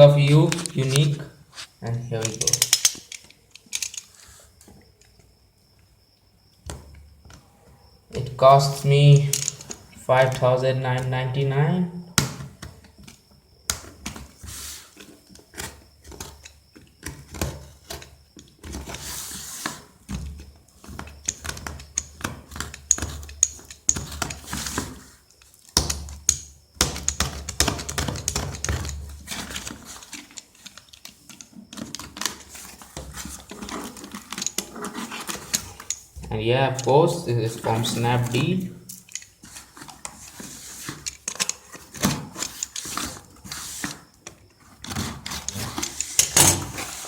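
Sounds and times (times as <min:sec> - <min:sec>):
packaging clicks and knocks: 0:02.2 - 0:04.1, 0:09.1 - 0:10.4, 0:19.7 - 0:36.9, 0:37.5 - 0:47.0
packaging rustling and crinkling: 0:28.8 - 0:36.0, 0:36.8 - 0:47.0.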